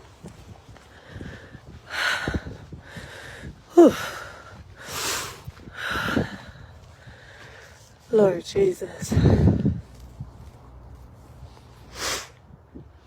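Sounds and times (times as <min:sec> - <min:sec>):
woman breathing hard: 0:00.8 - 0:07.8.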